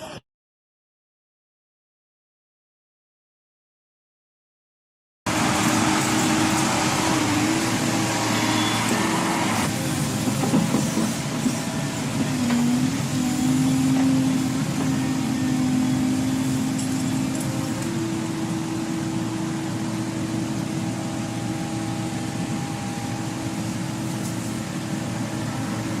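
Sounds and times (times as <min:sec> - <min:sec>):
heavy vehicle engine running: 0:05.3 - 0:26.0.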